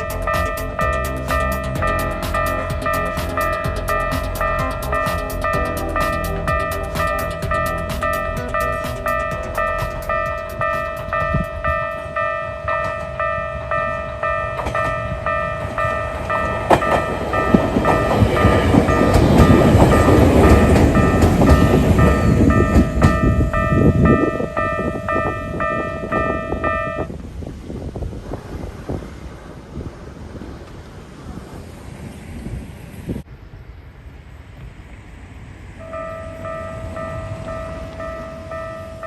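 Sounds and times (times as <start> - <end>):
wheels clicking over rail joints: 0.0 - 27.0
level crossing alarm chime: 0.0 - 27.1, 35.8 - 39.0
electric train rumbling: 0.0 - 39.0.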